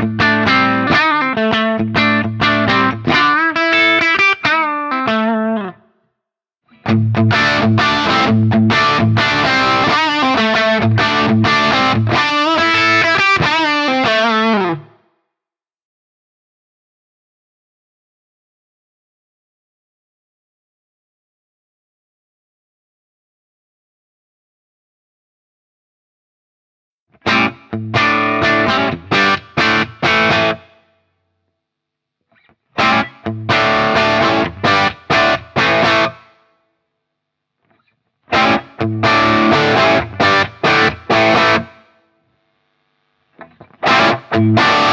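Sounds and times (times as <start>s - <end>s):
overdriven electric guitar: 0.0s - 5.9s, 6.7s - 15.1s, 27.2s - 30.9s, 32.4s - 36.5s, 37.7s - 44.9s.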